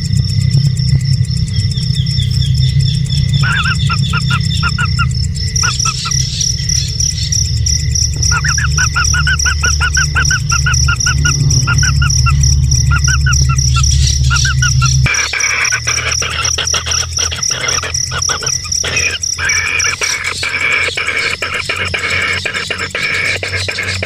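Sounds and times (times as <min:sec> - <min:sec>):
loud low rumble: 0:00.0 - 0:17.8
insect trill: 0:00.0 - 0:24.0
bird chirping: 0:01.5 - 0:24.0.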